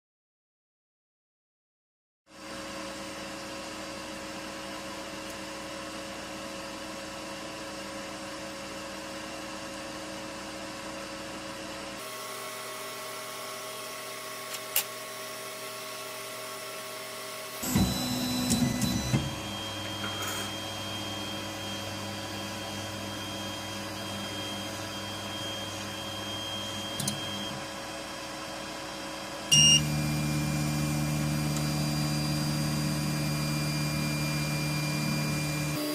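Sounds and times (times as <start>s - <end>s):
stepper motor tones: 17.6s - 27.7s, 29.5s - 35.9s.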